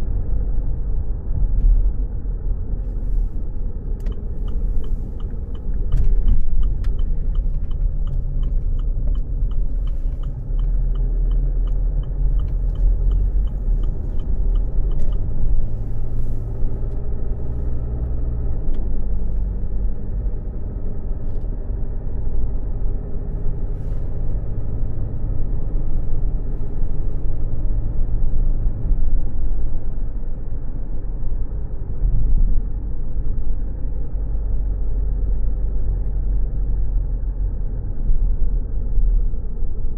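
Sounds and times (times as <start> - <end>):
car engine and road rumble: 0.0 - 39.9
turn signal ticking: 3.7 - 18.9.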